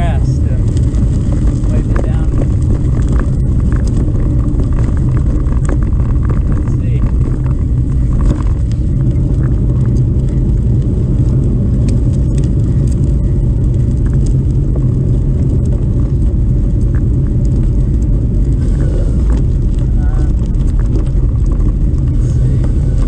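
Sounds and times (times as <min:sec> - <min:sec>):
car engine and tyres rumbling: 0:00.0 - 0:23.0
small clicks and knocks: 0:00.7 - 0:10.4.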